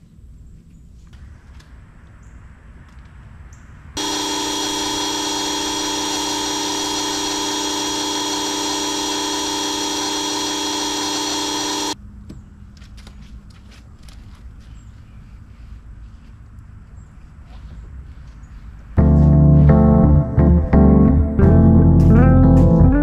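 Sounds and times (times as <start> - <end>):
machine motor whining: 4.0 - 12.0.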